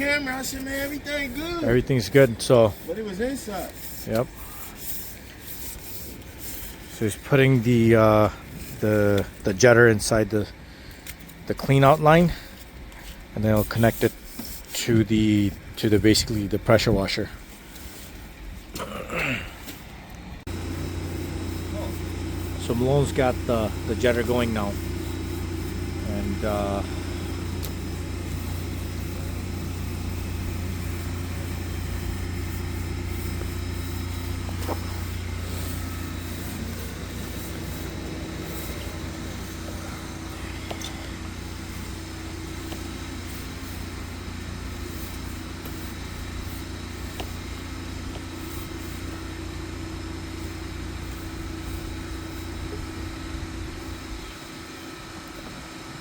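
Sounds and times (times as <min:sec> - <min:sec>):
sewer jetter engine drone: 0:18.8 - 0:56.0.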